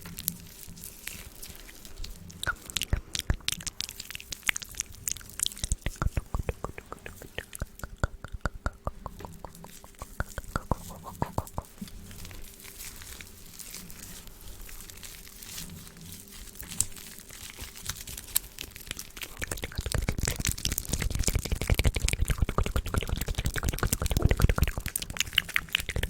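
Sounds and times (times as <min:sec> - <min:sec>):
wet mouth clicks and smacks: 0:02.0 - 0:11.9, 0:18.8 - 0:26.0.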